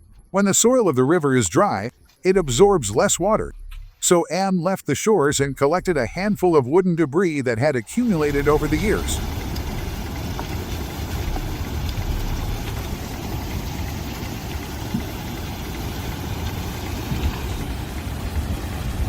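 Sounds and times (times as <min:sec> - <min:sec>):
flooded river rushing: 0:07.8 - 0:19.0.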